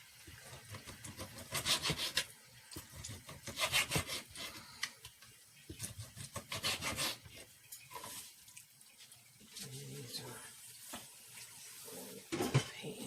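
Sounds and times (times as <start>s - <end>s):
knife cutting raw chicken: 0.4s - 4.6s, 5.7s - 7.3s.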